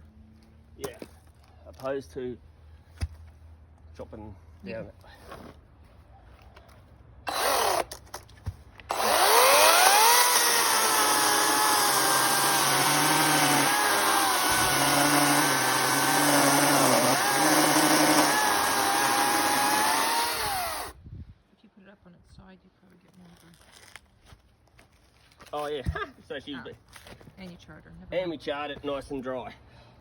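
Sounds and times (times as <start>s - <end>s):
chainsaw motor whine: 7.3s - 7.9s, 8.9s - 21.0s
chainsaw cutting wood: 7.3s - 8.2s, 8.9s - 21.0s.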